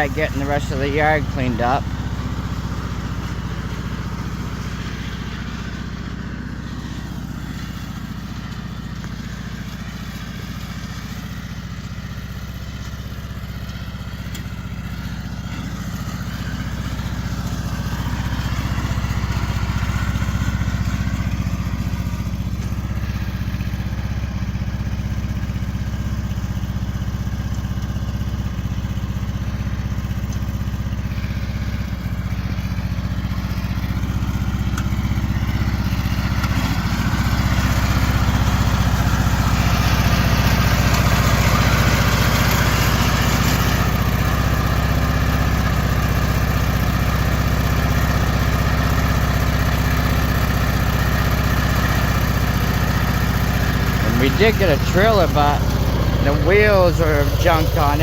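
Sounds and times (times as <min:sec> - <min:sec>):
lawn mower engine running: 0:00.0 - 0:58.0.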